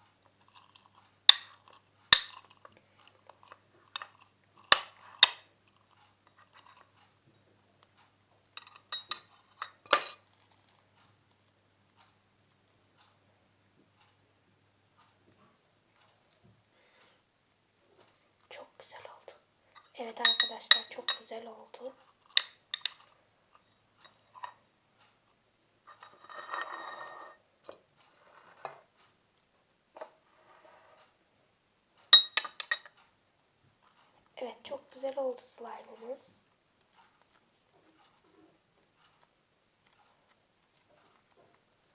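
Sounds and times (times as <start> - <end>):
spoon clinking and scraping bowl: 0.4 - 6.9, 8.4 - 10.3, 19.7 - 21.3, 22.2 - 24.6, 25.9 - 28.9, 32.1 - 33.0.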